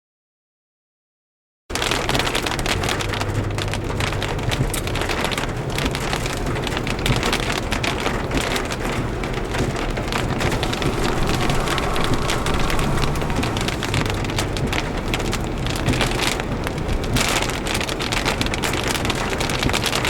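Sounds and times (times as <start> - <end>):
rain drops crackling: 1.7 - 20.0
low hum: 10.1 - 15.8.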